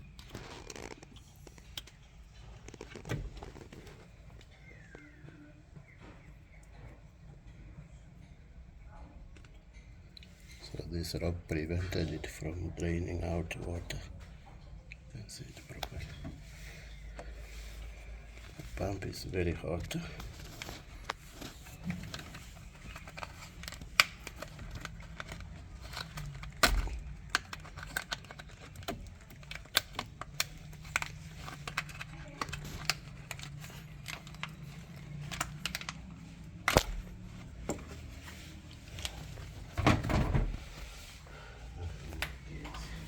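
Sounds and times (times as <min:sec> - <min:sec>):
hard parts clicking and rattling: 0:18.3 - 0:40.8.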